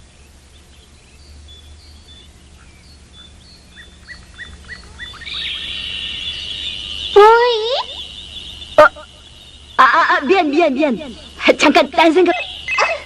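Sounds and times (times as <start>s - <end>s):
small birds chirping: 0.0s - 13.0s
steady high tone: 4.5s - 13.0s.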